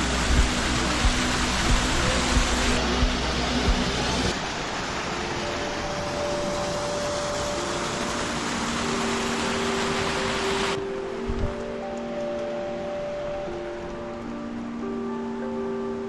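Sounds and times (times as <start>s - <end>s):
forest stream rushing: 0.0s - 16.0s
wind buffeting microphone: 10.0s - 14.6s.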